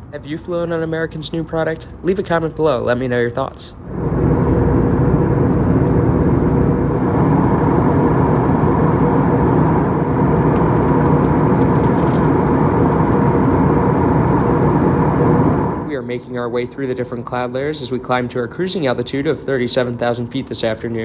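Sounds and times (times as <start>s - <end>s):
faint steady hum: 0.0s - 21.0s
airplane cabin rumble: 3.6s - 16.0s.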